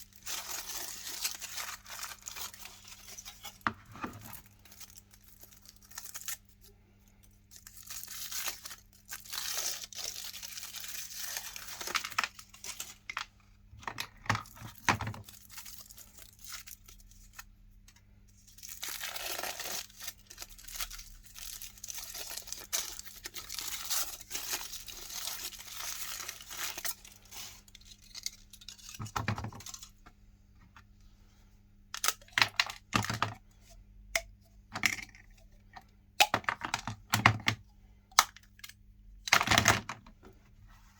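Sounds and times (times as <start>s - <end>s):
foil wrapping tearing and crinkling: 0.0s - 3.7s, 4.3s - 6.7s, 7.5s - 13.2s, 15.2s - 17.4s, 18.5s - 29.0s.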